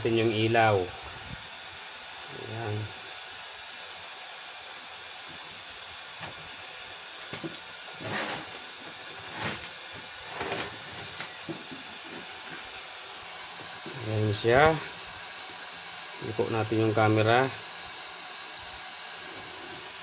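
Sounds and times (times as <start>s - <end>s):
steady background hiss: 0.0s - 20.0s
equipment handling rustles and knocks: 7.3s - 12.7s.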